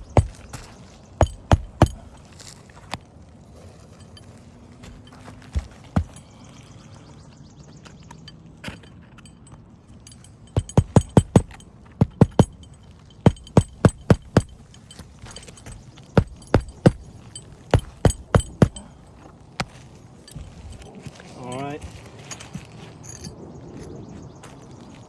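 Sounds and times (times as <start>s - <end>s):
hammer striking nails: 0.0s - 0.5s, 1.2s - 2.2s, 5.6s - 6.2s, 10.6s - 18.9s.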